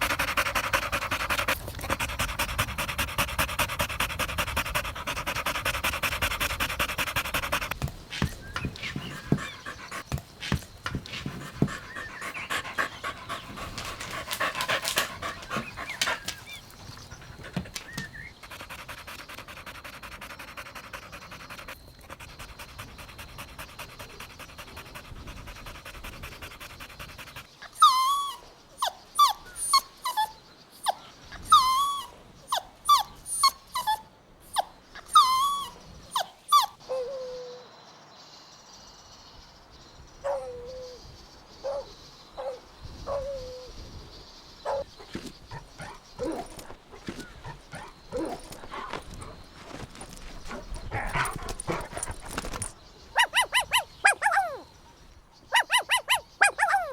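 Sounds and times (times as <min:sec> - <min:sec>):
puppies panting: 0:00.0 - 0:27.5, 0:44.7 - 0:54.7
puppy whimpering yelps: 0:07.4 - 0:18.3, 0:27.8 - 0:37.6, 0:50.4 - 0:54.6, 0:55.5 - 0:56.9.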